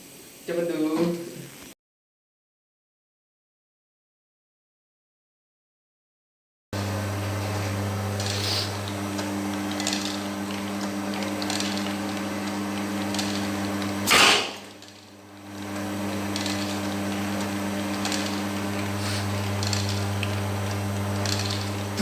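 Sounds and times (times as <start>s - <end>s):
machine humming: 6.8s - 22.0s.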